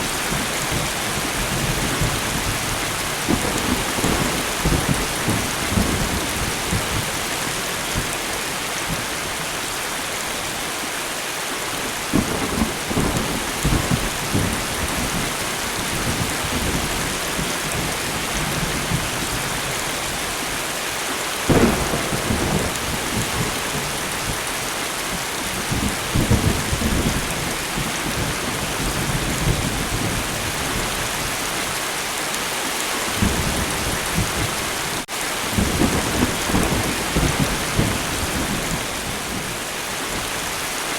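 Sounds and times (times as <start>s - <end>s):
light rain falling: 0.0s - 40.9s
sharp thunderclap: 21.5s - 27.4s
thunder rumbling: 21.5s - 30.6s.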